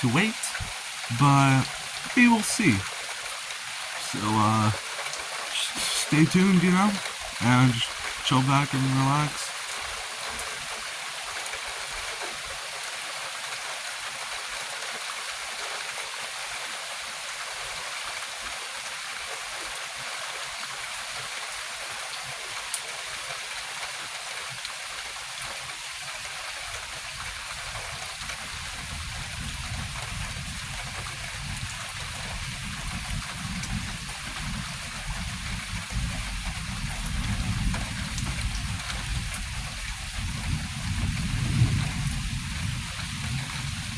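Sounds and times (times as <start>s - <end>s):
rain hissing: 0.0s - 10.4s, 27.2s - 43.9s.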